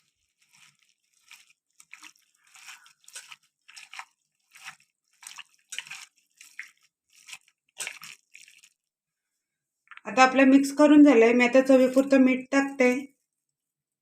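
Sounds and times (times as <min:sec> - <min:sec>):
wet squelching of chicken in marinade: 0:00.0 - 0:10.0.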